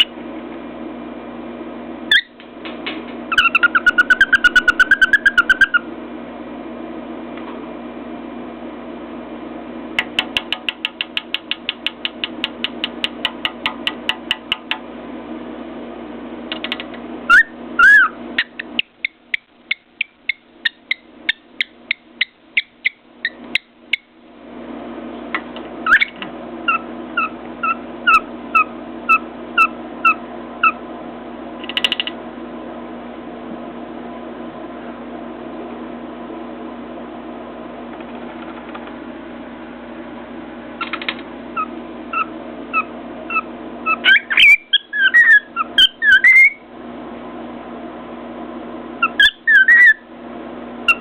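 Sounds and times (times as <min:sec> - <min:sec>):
steady low hum: 0:00.0 - 0:51.0
cockatiel whistling: 0:02.1 - 0:02.4, 0:03.3 - 0:05.8, 0:17.3 - 0:24.1, 0:25.8 - 0:30.8, 0:40.8 - 0:46.6, 0:49.0 - 0:50.0.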